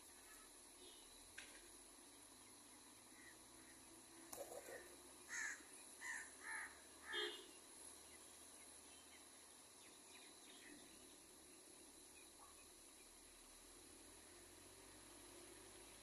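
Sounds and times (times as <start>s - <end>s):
crow cawing: 5.3s - 7.4s.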